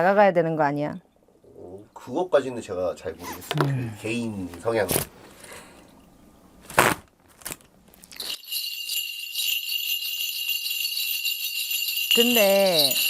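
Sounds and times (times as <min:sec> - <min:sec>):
ritual bells jingling: 0:08.2 - 0:13.0.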